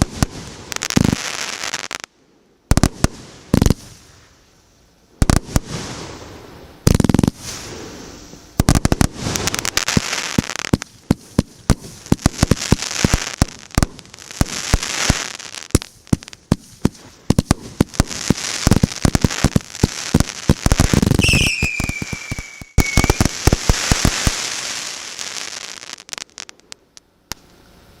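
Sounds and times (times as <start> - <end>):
fireworks crackling: 0.0 - 2.1, 2.7 - 27.6
fireworks bangs: 5.2 - 27.5
falling whistle: 21.2 - 23.2.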